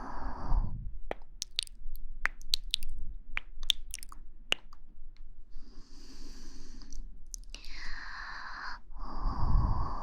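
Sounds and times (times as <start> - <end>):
sharp clicks and pops: 1.1 - 4.8, 6.9 - 7.9
breath on microphone: 5.5 - 10.0.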